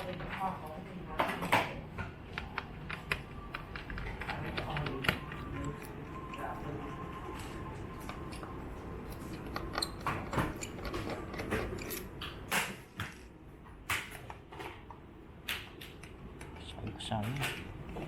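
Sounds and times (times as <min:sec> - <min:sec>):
small hard parts clicking and scraping: 0:07.4 - 0:13.3.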